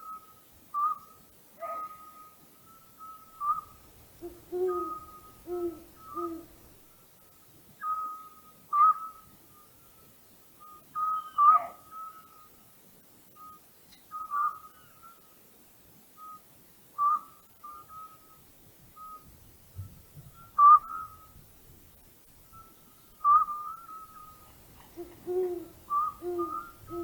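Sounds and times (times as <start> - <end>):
owl whistled notes: 0.0 - 6.6, 7.8 - 9.2, 10.6 - 12.5, 13.4 - 15.2, 17.0 - 18.4, 19.0 - 19.3, 20.3 - 21.4, 22.5 - 24.4, 25.0 - 27.0
deep owl hoots: 3.4 - 6.8, 11.0 - 11.9, 23.2 - 27.0.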